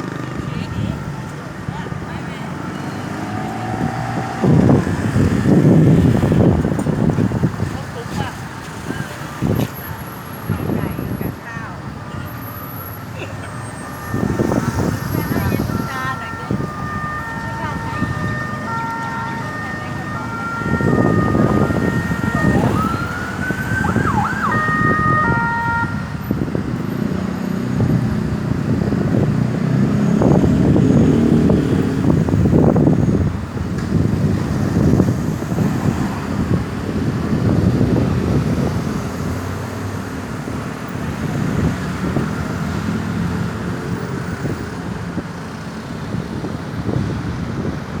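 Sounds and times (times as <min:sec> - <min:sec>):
ambulance siren: 0:00.0 - 0:07.4, 0:08.8 - 0:39.4
road traffic rumble: 0:00.0 - 0:48.0.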